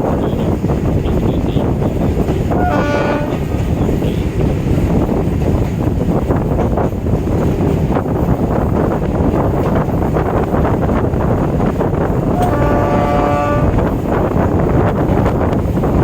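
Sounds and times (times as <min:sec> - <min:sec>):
train horn: 0:00.0 - 0:04.3, 0:12.3 - 0:14.0
train rumbling: 0:00.0 - 0:16.0
wind buffeting microphone: 0:00.0 - 0:16.0.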